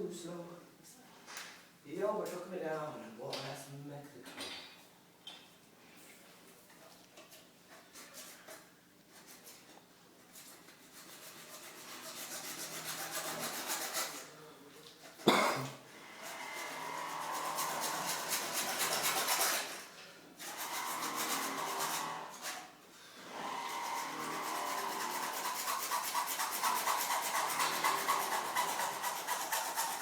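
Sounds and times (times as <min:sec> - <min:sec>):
hand tool rasping on hard surface: 0:07.3 - 0:14.3, 0:16.1 - 0:22.7, 0:23.6 - 0:30.0.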